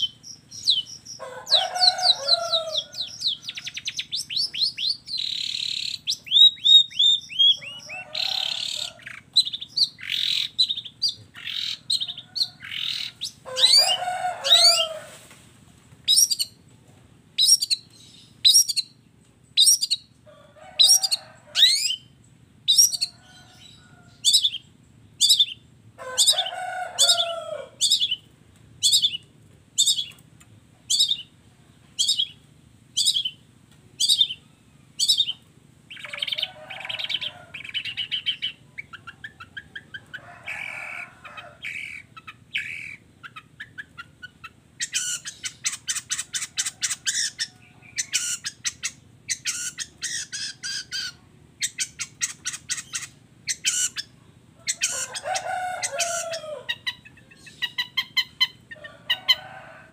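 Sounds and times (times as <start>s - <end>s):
bird harsh chattering: 0.0s - 14.9s, 35.0s - 58.8s
bird singing varied phrases: 0.0s - 14.9s, 16.0s - 16.6s, 17.4s - 20.2s, 20.8s - 30.2s, 30.9s - 31.4s, 32.0s - 58.8s.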